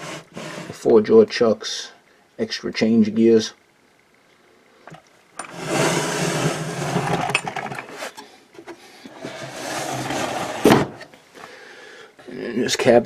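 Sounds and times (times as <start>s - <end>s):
drawer sliding on runners: 0.0s - 0.8s, 5.4s - 8.2s, 9.1s - 11.0s.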